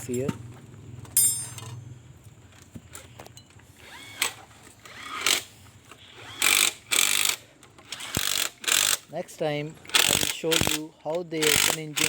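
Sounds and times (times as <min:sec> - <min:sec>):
ratchet bursts: 0:06.2 - 0:09.1, 0:09.9 - 0:10.8, 0:11.4 - 0:12.0.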